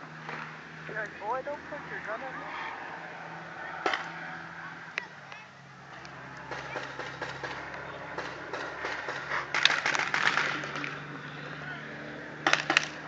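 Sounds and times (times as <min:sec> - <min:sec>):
paintball markers firing: 0:06.4 - 0:11.0, 0:12.4 - 0:13.0.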